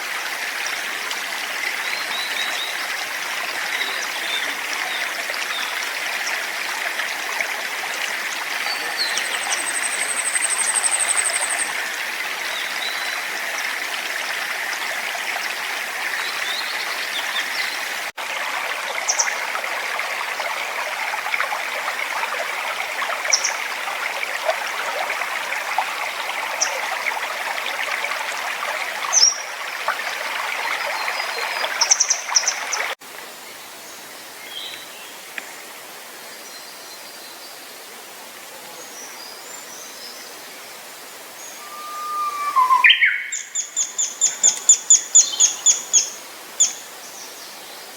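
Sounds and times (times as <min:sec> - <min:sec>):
forest stream running: 0:00.0 - 0:47.9
songbirds calling: 0:41.4 - 0:47.9.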